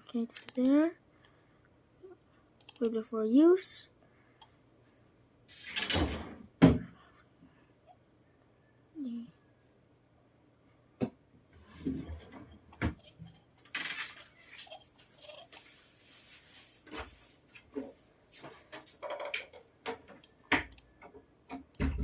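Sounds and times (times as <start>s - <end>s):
irregular clicks and knocks: 18.7s - 22.0s.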